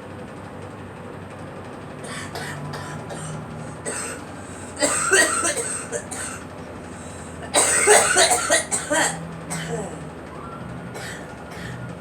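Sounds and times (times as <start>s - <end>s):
girl coughing: 2.0s - 6.4s, 7.4s - 10.0s, 11.0s - 11.8s.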